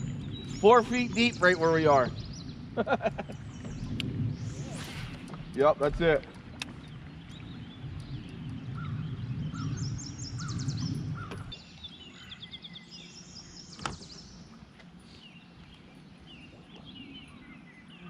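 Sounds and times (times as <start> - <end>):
low rumble: 0.0 - 12.3
songbirds chirping and trilling: 0.0 - 18.0.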